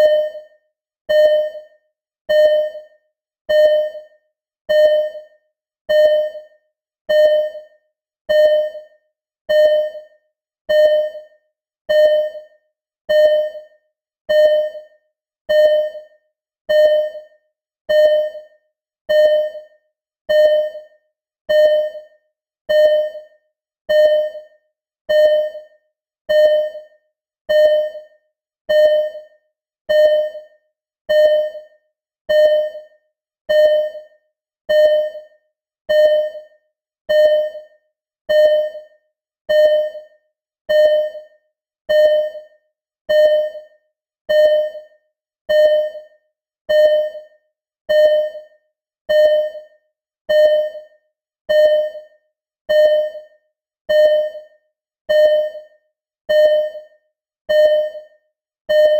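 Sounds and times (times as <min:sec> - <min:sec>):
heart monitor beeping: 0:00.0 - 0:00.5, 0:01.1 - 0:01.7, 0:02.3 - 0:02.9, 0:03.5 - 0:04.1, 0:04.7 - 0:05.3, 0:05.9 - 0:06.5, 0:07.1 - 0:07.7, 0:08.3 - 0:08.9, 0:09.5 - 0:10.1, 0:10.7 - 0:11.3, 0:11.9 - 0:12.5, 0:13.1 - 0:13.7, 0:14.3 - 0:14.9, 0:15.5 - 0:16.1, 0:16.7 - 0:17.3, 0:17.9 - 0:18.5, 0:19.1 - 0:19.7, 0:20.3 - 0:20.9, 0:21.5 - 0:22.1, 0:22.7 - 0:23.3, 0:23.9 - 0:24.5, 0:25.1 - 0:25.7, 0:26.3 - 0:26.9, 0:27.5 - 0:28.1, 0:28.7 - 0:29.3, 0:29.9 - 0:30.5, 0:31.1 - 0:31.7, 0:32.3 - 0:32.9, 0:33.5 - 0:34.1, 0:34.7 - 0:35.3, 0:35.9 - 0:36.5, 0:37.1 - 0:37.7, 0:38.3 - 0:38.9, 0:39.5 - 0:40.1, 0:40.7 - 0:42.5, 0:43.1 - 0:43.7, 0:44.3 - 0:47.3, 0:47.9 - 0:58.9.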